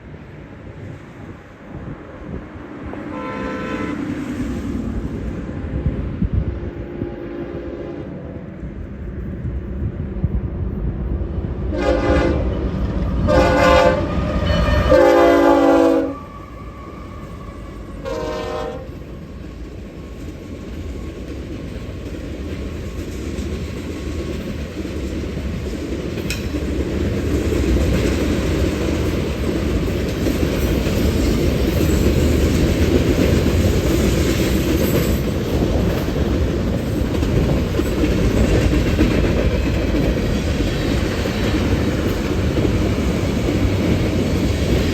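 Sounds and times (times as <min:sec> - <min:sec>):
locomotive air horn blasts: 0:03.0 - 0:04.2, 0:11.7 - 0:12.6, 0:13.3 - 0:19.0
train wheels clacking on rails: 0:11.6 - 0:44.9.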